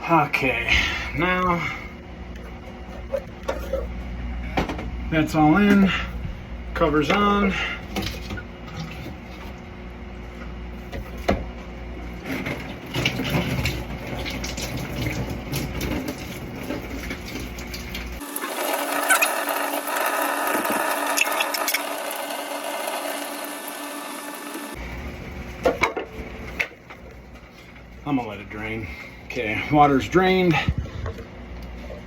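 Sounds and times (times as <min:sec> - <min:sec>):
water running through plumbing: 0:06.8 - 0:11.3, 0:11.9 - 0:32.0.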